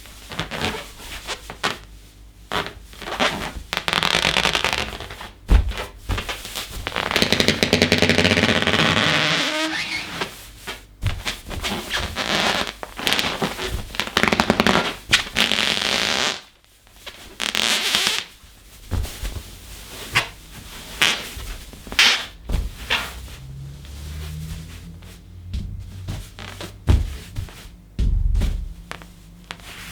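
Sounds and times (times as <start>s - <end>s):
balloon squeaks and rubbing: 2.5s - 10.4s, 11.2s - 27.5s
balloon squealing: 6.9s - 10.3s, 12.0s - 16.5s, 17.4s - 18.3s, 21.0s - 23.2s.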